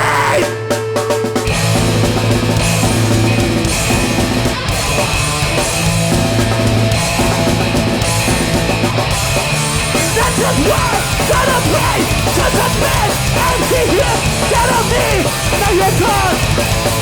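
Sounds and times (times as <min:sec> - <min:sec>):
bass: 0:00.0 - 0:00.6, 0:01.4 - 0:17.0
distorted electric guitars: 0:00.0 - 0:17.0
fast drum kit: 0:00.0 - 0:17.0.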